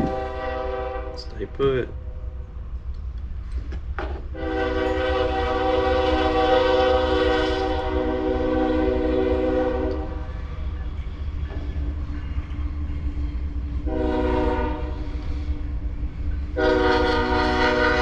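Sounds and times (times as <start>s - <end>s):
train horn chord: 0.0s - 1.4s, 4.3s - 10.2s, 13.8s - 15.2s, 16.6s - 18.0s.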